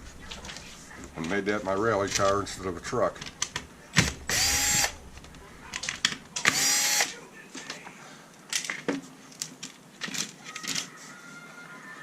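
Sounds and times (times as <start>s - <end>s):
cordless screwdriver running: 4.3s - 5.0s, 6.5s - 7.1s.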